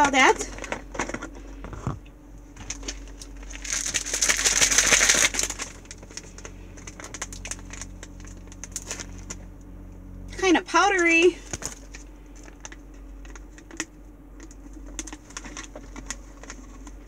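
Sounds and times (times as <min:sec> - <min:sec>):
packet crinkling: 0:02.6 - 0:09.4, 0:11.0 - 0:17.0
packet tearing open: 0:02.6 - 0:09.4.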